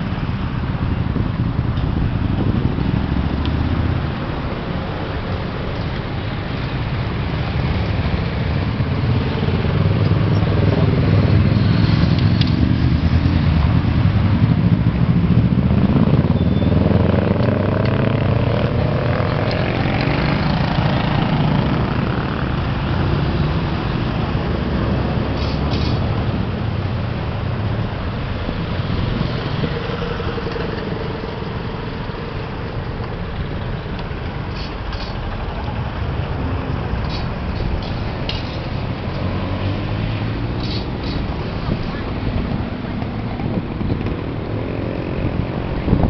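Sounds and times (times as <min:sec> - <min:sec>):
road traffic rumble: 0:00.0 - 0:46.0
vehicle engine passing by: 0:34.5 - 0:46.0.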